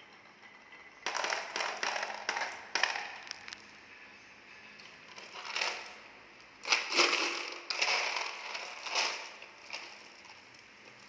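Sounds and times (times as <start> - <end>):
balls rattling down wooden track: 0.1 - 3.6, 5.2 - 6.0, 6.6 - 10.4.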